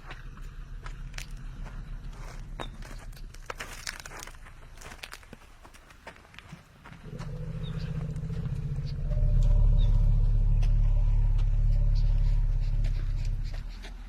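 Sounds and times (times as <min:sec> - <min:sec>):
elephant growling: 0:07.0 - 0:13.9.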